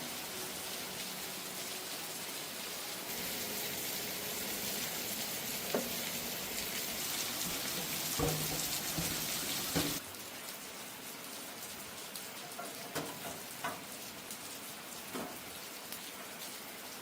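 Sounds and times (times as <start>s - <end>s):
steady hiss: 0.0s - 10.0s.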